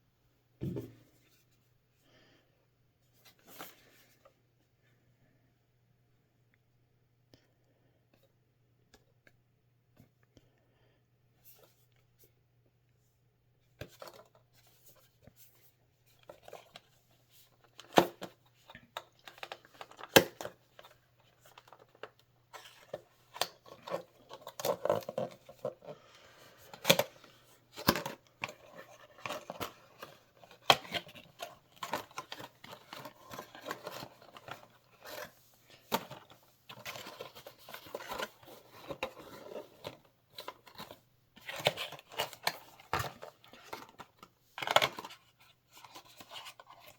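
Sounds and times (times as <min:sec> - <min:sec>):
packaging rustling and tearing: 0:26.6 - 0:46.9.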